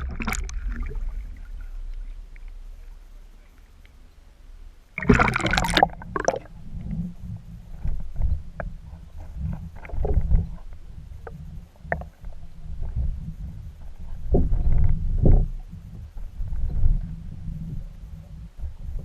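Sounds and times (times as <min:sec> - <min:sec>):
knocks and clicks underwater: 0:00.0 - 0:02.9, 0:05.0 - 0:17.8
muffled underwater rumbling: 0:00.0 - 0:19.0
object splashing into water: 0:05.0 - 0:06.5.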